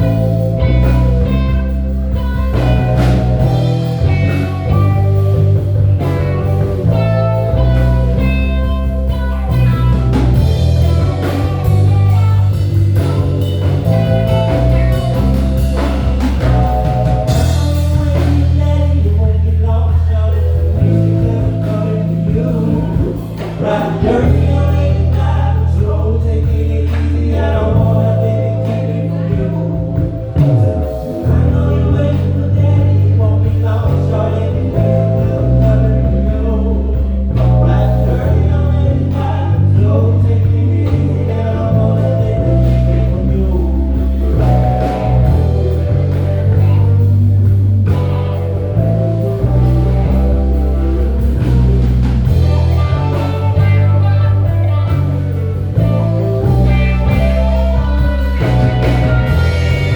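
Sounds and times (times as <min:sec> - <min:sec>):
bass guitar long notes: 0:00.0 - 0:59.9
live blues soul band: 0:00.0 - 0:59.9.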